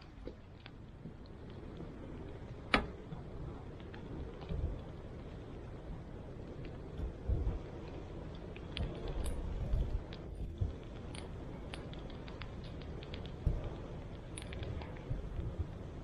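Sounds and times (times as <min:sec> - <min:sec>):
sharp clicks and crackles: 0:06.4 - 0:16.0.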